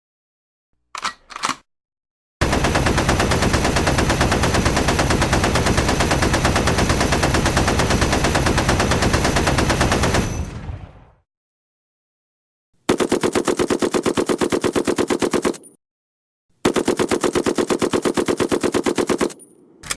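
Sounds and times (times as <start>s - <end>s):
machine gun firing: 2.4s - 10.7s, 12.9s - 15.7s, 16.6s - 19.4s.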